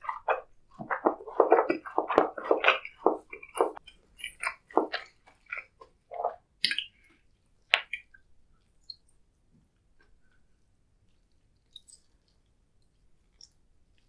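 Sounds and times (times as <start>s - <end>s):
wet sticky chewing: 0.0s - 8.2s.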